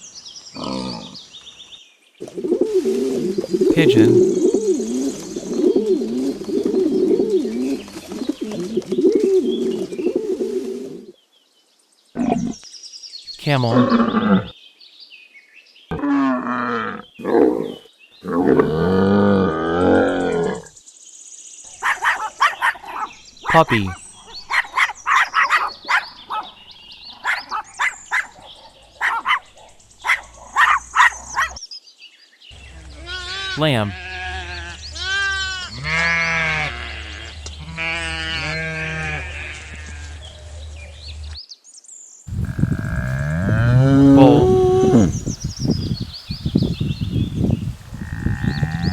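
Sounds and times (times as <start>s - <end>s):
pigeon cooing: 2.2s - 11.1s, 42.3s - 45.4s.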